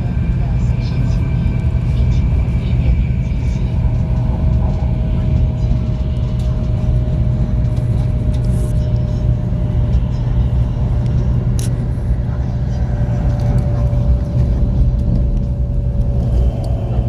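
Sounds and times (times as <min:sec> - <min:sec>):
vehicle rumble: 0:00.0 - 0:17.0.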